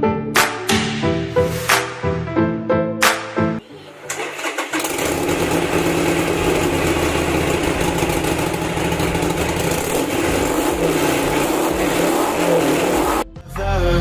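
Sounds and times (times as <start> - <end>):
motorcycle engine cranking: 4.0 - 13.2
motorcycle engine idling: 4.2 - 13.2.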